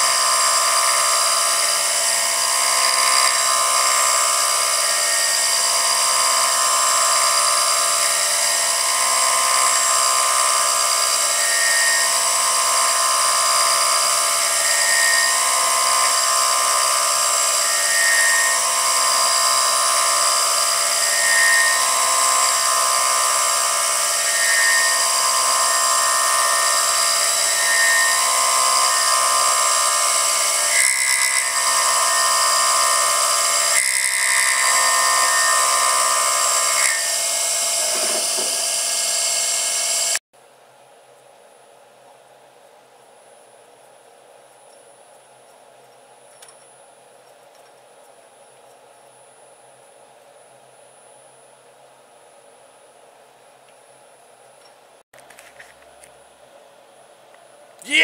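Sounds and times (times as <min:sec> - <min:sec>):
metal cutting noise: 0:00.0 - 0:40.2, 0:57.8 - 0:58.0
milling spindle whine: 0:00.0 - 0:40.2.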